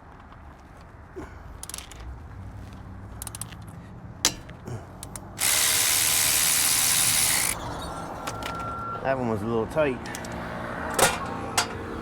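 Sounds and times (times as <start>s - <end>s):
metallic clicks of hand tools: 1.6s - 2.1s, 3.2s - 7.6s, 10.0s - 11.8s
power tool running loudly: 5.4s - 7.6s.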